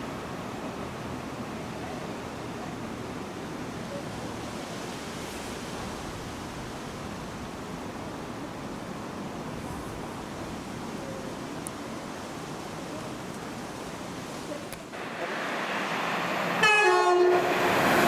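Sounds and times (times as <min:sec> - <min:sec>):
steady rushing noise: 0:03.7 - 0:16.7.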